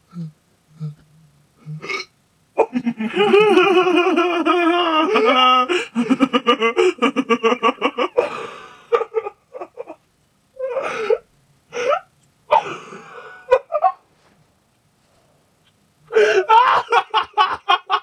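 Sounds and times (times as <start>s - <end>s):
person laughing hard: 2.6s - 10.0s, 12.6s - 14.0s, 16.1s - 18.0s
breathless gasps: 8.2s - 8.9s, 12.6s - 13.5s, 16.1s - 16.5s.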